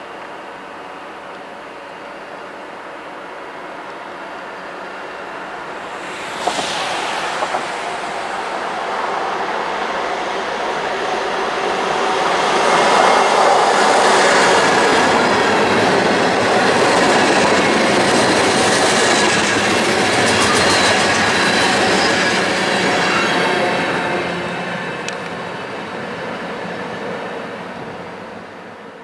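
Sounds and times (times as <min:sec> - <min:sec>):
freight train wheels on rails: 0:05.0 - 0:25.4.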